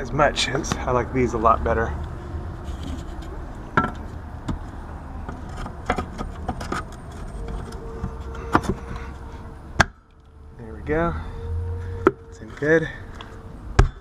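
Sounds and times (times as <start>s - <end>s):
faint steady tone: 5.9s - 14.0s.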